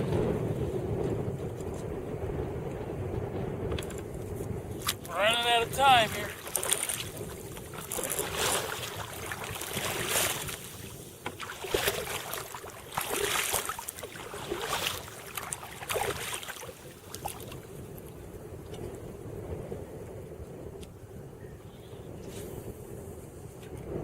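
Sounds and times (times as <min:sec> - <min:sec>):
wind buffeting microphone: 0:00.0 - 0:24.0
water splashing against kayak: 0:03.7 - 0:19.0.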